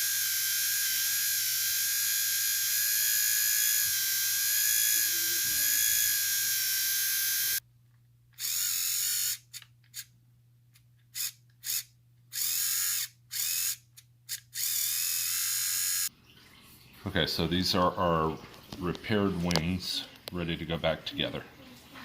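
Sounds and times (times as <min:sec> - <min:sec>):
small electric motor whining: 0:00.0 - 0:07.6, 0:08.4 - 0:10.1, 0:11.1 - 0:16.1.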